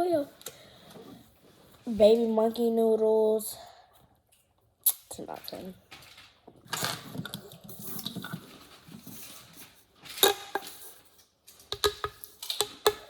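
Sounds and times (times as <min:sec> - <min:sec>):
plastic toys rustling and clattering: 0:04.3 - 0:13.0.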